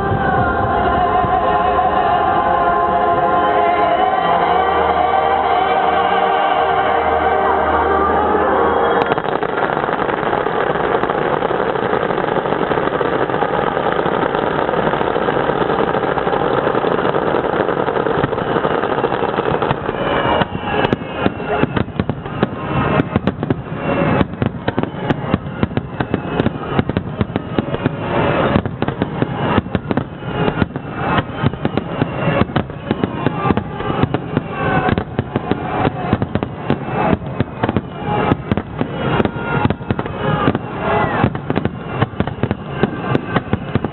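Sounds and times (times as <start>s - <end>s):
fireworks bursting: 3.4s - 43.9s.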